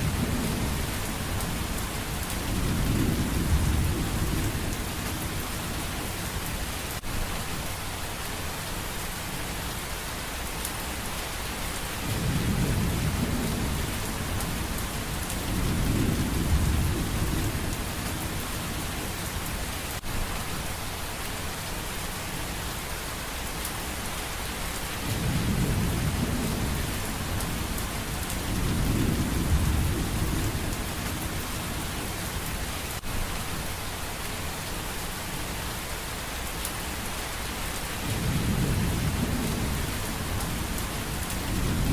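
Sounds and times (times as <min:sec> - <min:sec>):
thunder rumbling: 0:00.0 - 0:05.4, 0:12.0 - 0:18.6, 0:25.0 - 0:32.1, 0:38.0 - 0:41.9
steady rain hiss: 0:00.0 - 0:41.9.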